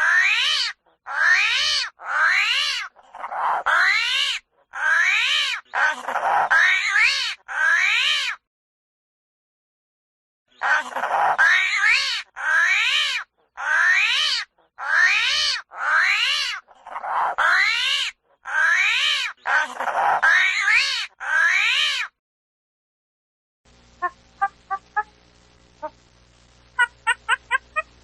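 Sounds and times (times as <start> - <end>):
cat-like animal calls: 0.0 - 8.4, 10.6 - 22.2.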